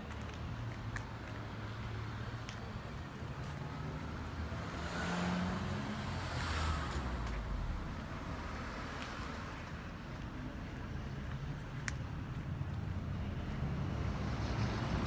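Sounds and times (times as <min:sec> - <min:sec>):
car driving past: 0:04.5 - 0:09.5.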